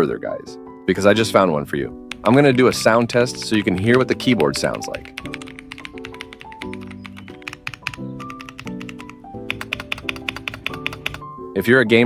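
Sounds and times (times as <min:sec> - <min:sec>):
mechanical keyboard typing: 0:02.1 - 0:11.2.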